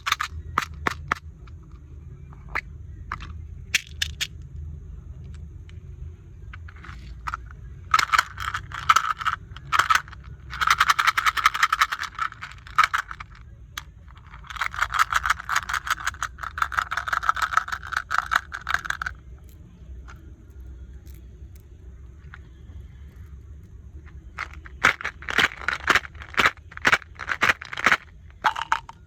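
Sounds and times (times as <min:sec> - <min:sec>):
hard candies rattling: 0:00.0 - 0:01.2, 0:03.1 - 0:04.3, 0:06.7 - 0:13.4, 0:14.1 - 0:19.2, 0:24.1 - 0:29.0.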